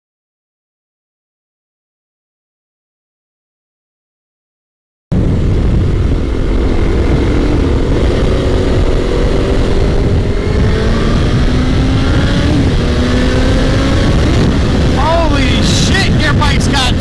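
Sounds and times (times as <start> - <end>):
motorcycle engine accelerating: 5.1 - 17.0
wind rumble on microphone: 5.1 - 17.0.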